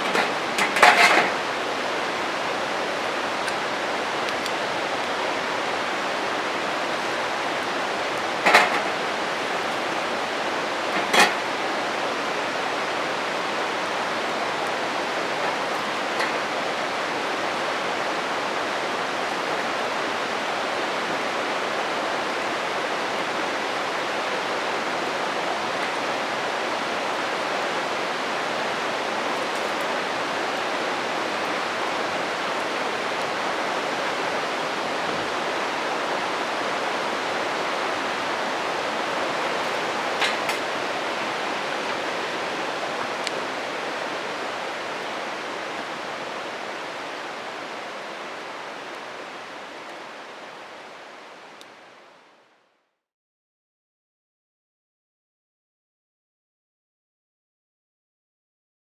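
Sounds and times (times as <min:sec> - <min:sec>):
campfire popping: 0:00.0 - 0:01.8, 0:06.4 - 0:20.5, 0:39.0 - 0:42.2
stream rushing: 0:00.0 - 0:52.5.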